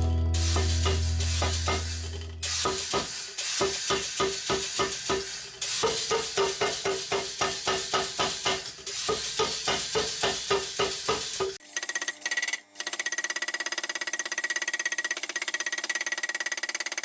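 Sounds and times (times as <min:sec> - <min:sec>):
hammer blows on steel: 0:00.0 - 0:05.2.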